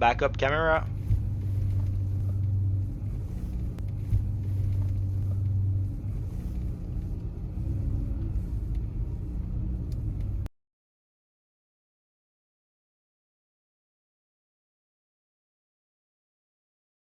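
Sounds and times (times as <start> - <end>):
minivan engine rumbling: 0.0 - 10.5.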